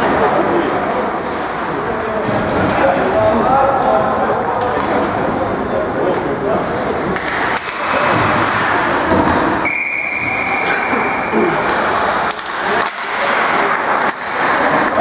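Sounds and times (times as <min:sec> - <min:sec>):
skates scraping on ice: 0:07.1 - 0:15.0
whistle tone: 0:09.6 - 0:11.3.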